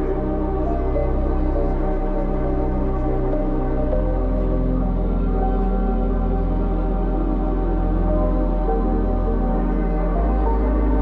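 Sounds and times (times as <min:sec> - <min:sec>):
dark ambient electronic music: 0:00.0 - 0:11.0.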